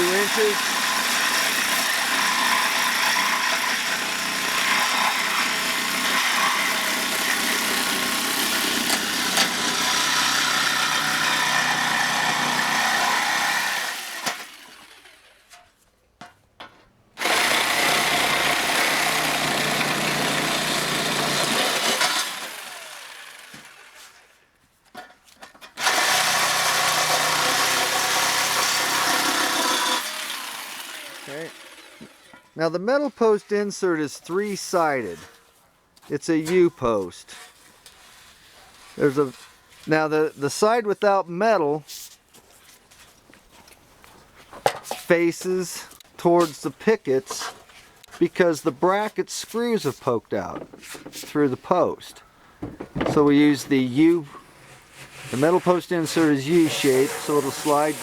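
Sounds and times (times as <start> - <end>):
reciprocating saw cutting metal: 0.0 - 15.3, 17.2 - 24.0, 25.8 - 32.6, 53.2 - 58.0.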